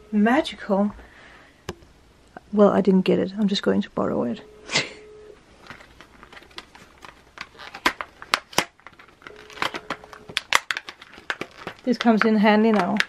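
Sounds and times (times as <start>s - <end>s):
packaging crinkling and rustling: 5.5s - 13.0s.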